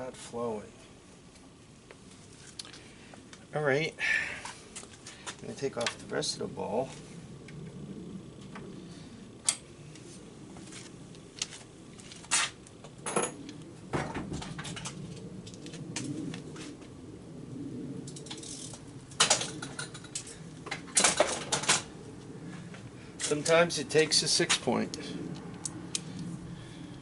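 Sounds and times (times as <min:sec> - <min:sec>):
hand tools and metal parts clinking: 0:18.0 - 0:21.9, 0:23.2 - 0:23.6.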